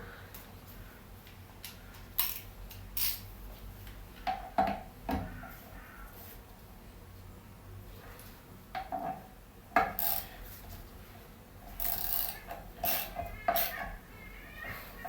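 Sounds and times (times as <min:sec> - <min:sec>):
metal parts clinking: 0:02.2 - 0:03.3, 0:11.8 - 0:13.8.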